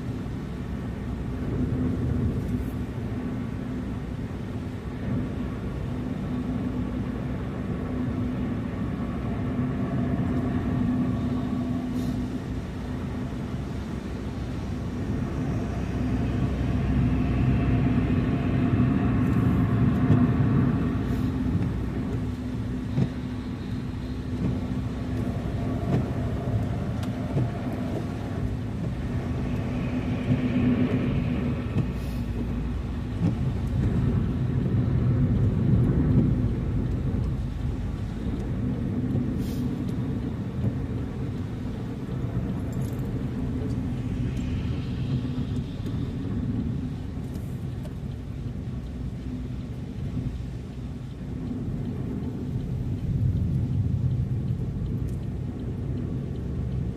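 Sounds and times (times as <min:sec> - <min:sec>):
car engine and tyre rumble: 0:00.0 - 0:56.9
faint ticks: 0:21.1 - 0:32.6, 0:33.2 - 0:56.9
tyre hiss: 0:24.9 - 0:33.5.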